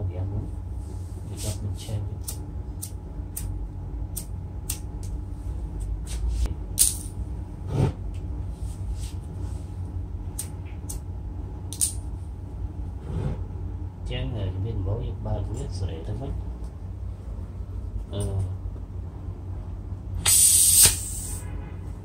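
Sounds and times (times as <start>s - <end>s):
low steady rumble: 0.0s - 20.3s.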